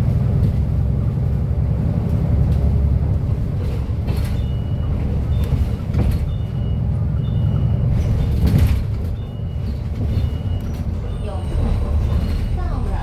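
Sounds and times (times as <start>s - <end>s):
bus engine rumble: 0.0s - 13.0s
body knocks and rattles: 3.5s - 6.6s.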